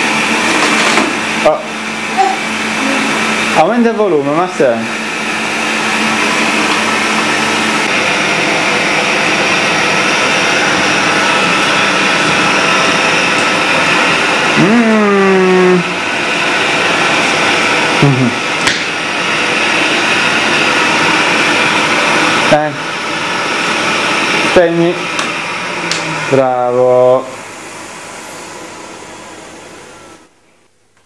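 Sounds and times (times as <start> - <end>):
vacuum cleaner running: 0.0 - 30.8
short vocal sound: 14.6 - 16.0, 18.0 - 18.4.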